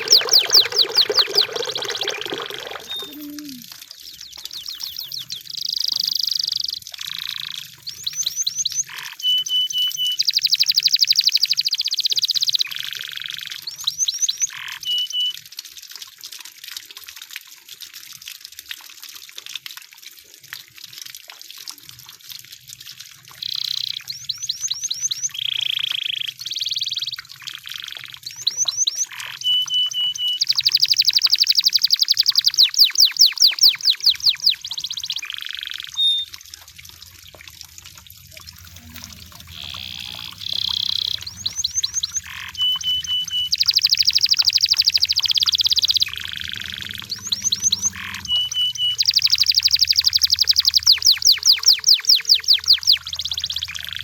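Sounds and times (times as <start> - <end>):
canary singing trills: 0.0 - 15.3, 27.7 - 36.3, 38.4 - 54.0.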